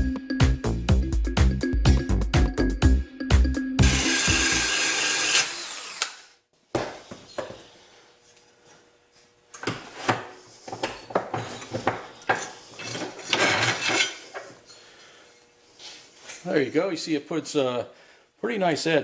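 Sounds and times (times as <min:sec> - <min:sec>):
drill sharpener grinding metal: 0:03.8 - 0:06.2
metal knocks and scrapes: 0:10.0 - 0:14.5.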